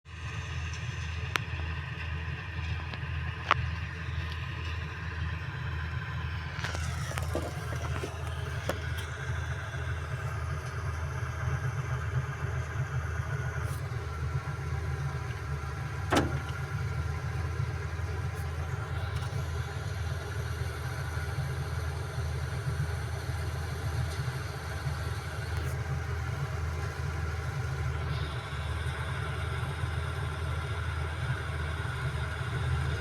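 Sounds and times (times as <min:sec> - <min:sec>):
combine harvester engine rumble: 0:00.1 - 0:33.0
machinery clicks and knocks: 0:15.1 - 0:16.8.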